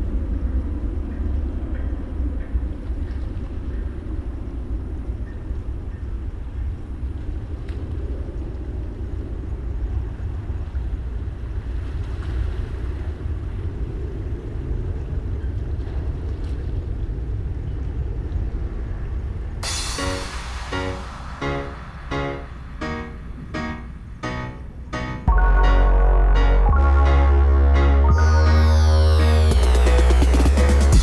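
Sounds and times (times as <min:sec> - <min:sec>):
jet engines rumbling: 0:19.6 - 0:26.0
piano music: 0:19.6 - 0:31.0.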